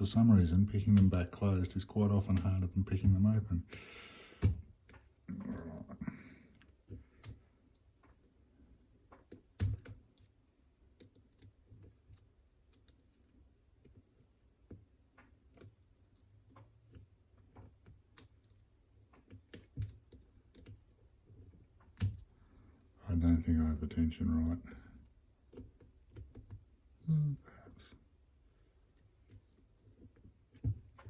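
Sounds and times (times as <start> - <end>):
lock picks clicking in padlock: 17.8 - 21.0.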